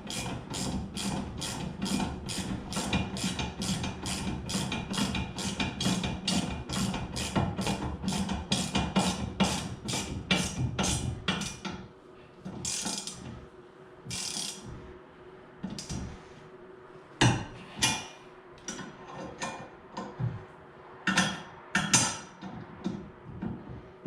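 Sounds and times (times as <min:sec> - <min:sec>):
ratchet wrench clicking: 0:12.7 - 0:13.2, 0:14.1 - 0:14.6.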